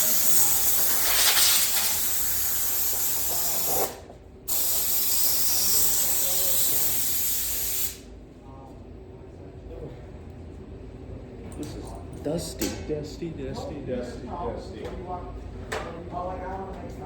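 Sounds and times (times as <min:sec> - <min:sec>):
air hissing from blow nozzle: 0:00.0 - 0:08.0.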